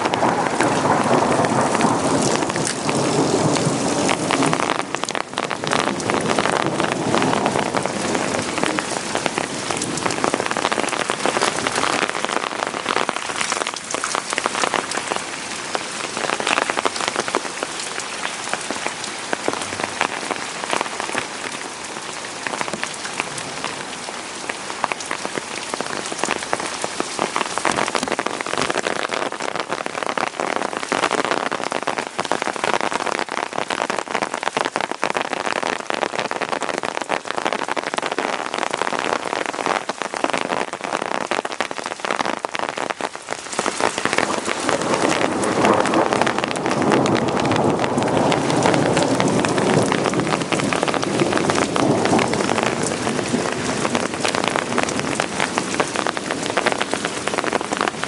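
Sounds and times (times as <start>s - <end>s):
thunder rumble: 0.0s - 13.3s, 44.0s - 56.2s
heavy rain pattering: 0.0s - 58.0s.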